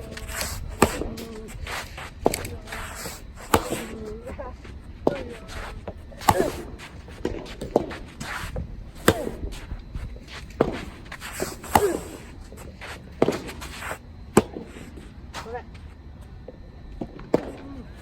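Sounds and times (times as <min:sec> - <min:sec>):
wind rumble on microphone: 0:00.0 - 0:11.1
footsteps: 0:00.0 - 0:14.0.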